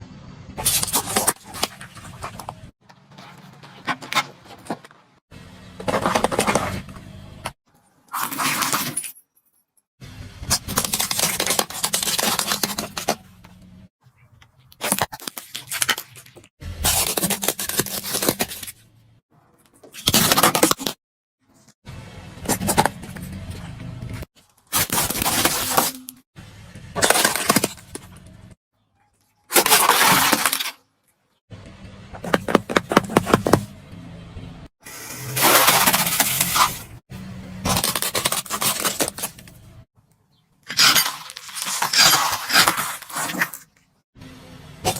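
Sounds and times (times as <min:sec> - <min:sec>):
objects crushed under car tyre: 0:26.9 - 0:28.2, 0:29.5 - 0:30.8, 0:35.3 - 0:36.9, 0:37.6 - 0:39.6, 0:40.7 - 0:43.6.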